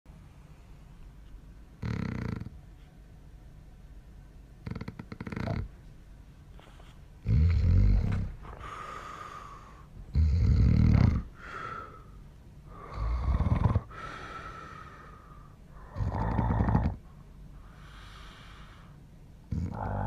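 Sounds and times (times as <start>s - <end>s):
man snoring heavily: 1.8s - 2.5s, 7.3s - 8.2s, 10.1s - 12.0s, 12.7s - 15.2s, 15.8s - 17.0s, 19.5s - 20.0s.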